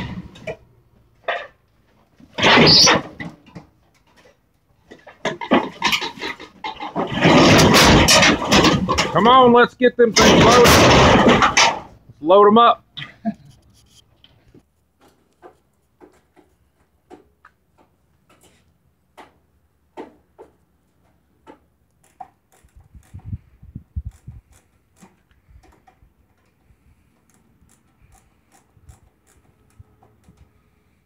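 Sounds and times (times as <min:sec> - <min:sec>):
scrap metal knocks and clicks: 0:01.2 - 0:09.3, 0:10.2 - 0:12.0.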